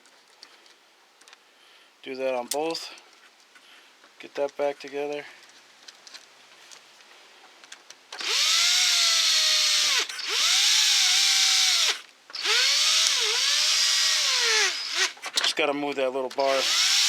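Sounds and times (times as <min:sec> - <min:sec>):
cordless drill driving bolts: 0:08.2 - 0:15.4, 0:16.4 - 0:17.0.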